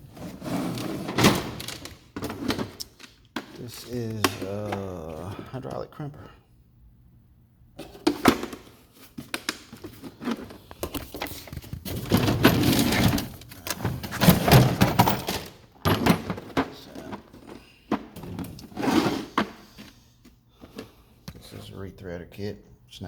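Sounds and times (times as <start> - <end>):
tools sliding and scraping: 0.0 - 4.0, 9.8 - 15.5, 18.2 - 20.1
tools knocking and clattering: 7.8 - 18.6.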